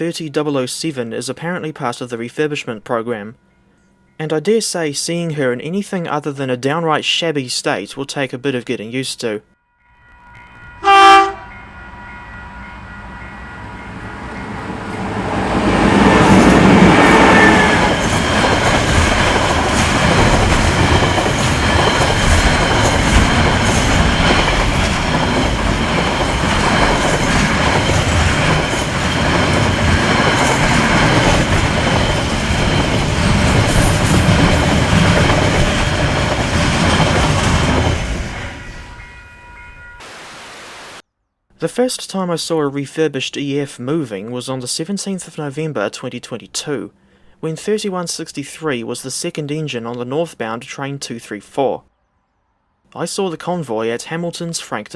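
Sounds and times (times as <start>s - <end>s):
electric train passing: 9.7s - 40.1s.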